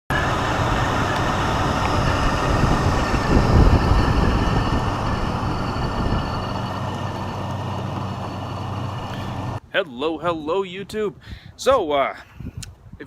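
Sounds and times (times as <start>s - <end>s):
vehicle rumble: 0.1s - 9.7s.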